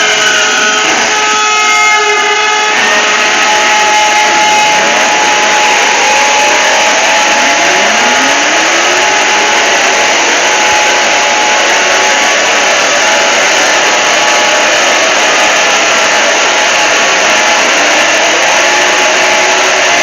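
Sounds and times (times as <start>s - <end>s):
distorted alarm hissing: 0.0s - 20.0s
steady high tone: 1.4s - 20.0s
upward sweeping tones: 3.5s - 11.6s.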